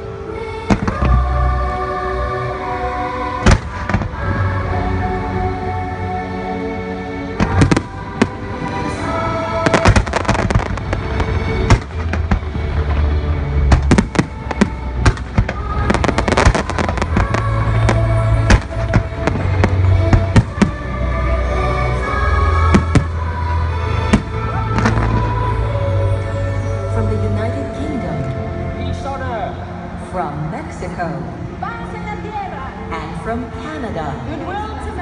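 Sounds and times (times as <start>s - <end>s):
fireworks show music: 0.0s - 35.0s
fireworks bangs and booms: 0.7s - 1.4s, 3.4s - 4.4s, 7.4s - 21.0s, 22.5s - 23.4s.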